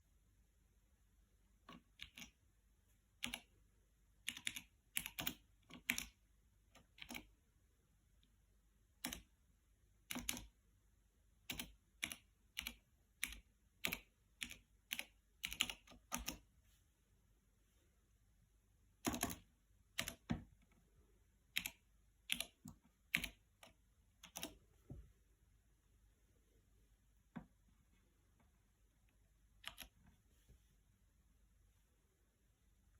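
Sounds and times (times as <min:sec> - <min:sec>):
mechanical keyboard keystrokes clicking: 0:11.5 - 0:16.4, 0:19.0 - 0:20.3.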